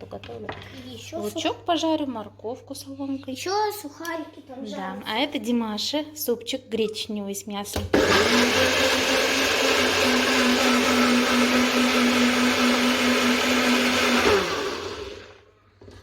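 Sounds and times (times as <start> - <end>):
blender motor whining: 7.9 - 15.5.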